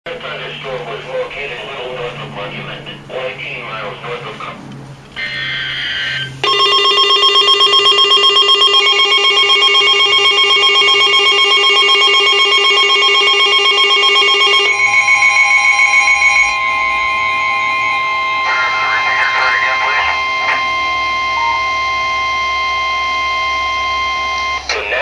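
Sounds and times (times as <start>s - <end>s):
steady electronic tone: 5.1s - 25.0s
harsh electronic alert tone: 5.2s - 25.0s.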